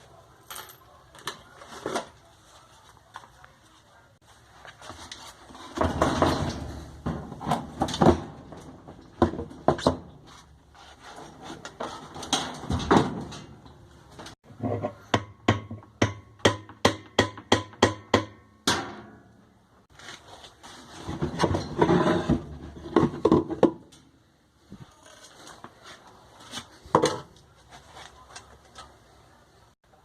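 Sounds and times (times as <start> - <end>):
tools clanking on metal: 5.5 - 10.2, 11.0 - 14.4.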